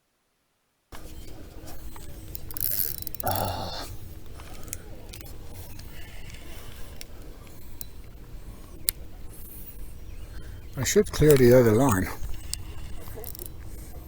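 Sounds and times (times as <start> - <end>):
fishing tackle clicks and rattles: 1.9 - 3.5, 10.8 - 14.0.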